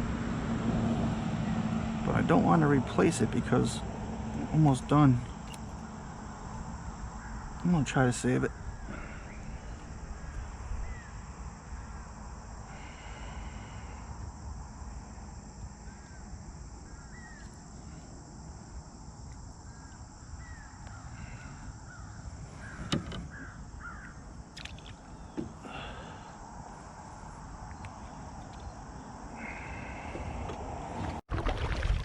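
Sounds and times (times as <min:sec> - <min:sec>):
low steady rumble: 0:00.0 - 0:25.4
birds chirping: 0:01.4 - 0:30.6.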